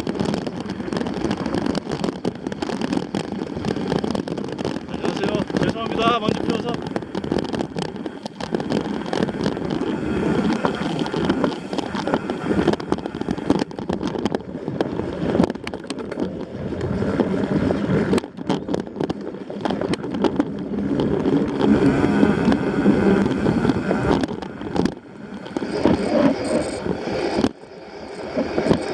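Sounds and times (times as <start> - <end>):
rumbling ride noise: 0.0 - 13.8
sharp rattles and clicks: 0.0 - 28.9
wind buffeting microphone: 0.0 - 28.9.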